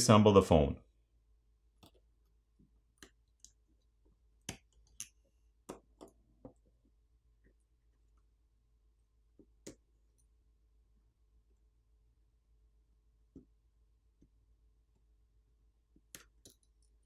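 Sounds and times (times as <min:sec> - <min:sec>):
clicks and taps of small tools: 0:04.5 - 0:06.6.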